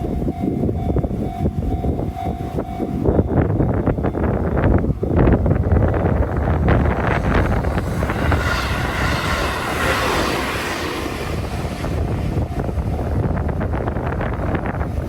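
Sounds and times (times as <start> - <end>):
train rumbling past: 0.0 - 15.0
rushing hiss: 6.9 - 12.9.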